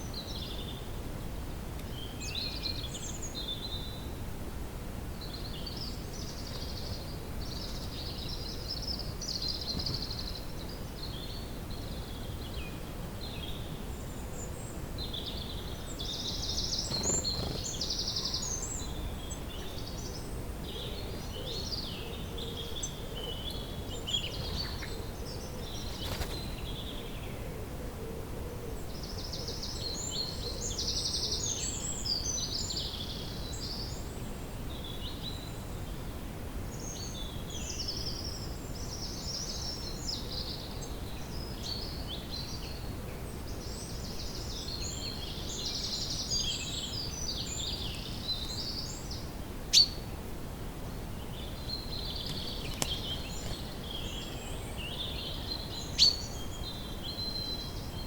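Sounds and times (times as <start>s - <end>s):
songbirds chirping and trilling: 0.0s - 58.0s.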